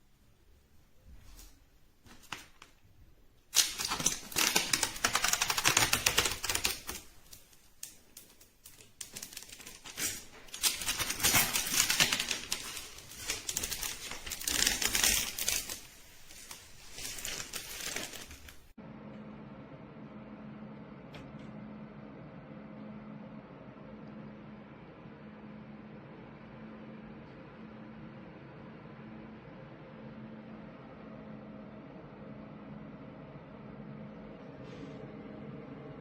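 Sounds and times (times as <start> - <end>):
rapid clicking and clattering: 3.6 - 15.8.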